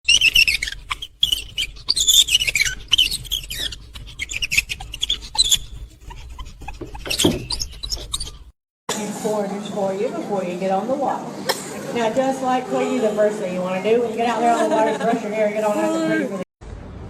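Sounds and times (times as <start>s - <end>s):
small animal squeaking: 0.0s - 8.5s.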